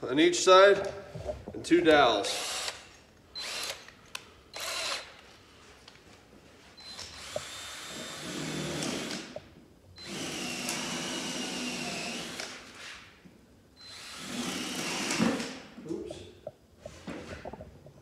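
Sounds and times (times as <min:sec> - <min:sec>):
power drill boring into wood: 0:02.3 - 0:02.8, 0:03.4 - 0:03.8, 0:04.5 - 0:05.1, 0:06.9 - 0:09.3, 0:10.0 - 0:12.6, 0:13.8 - 0:15.6.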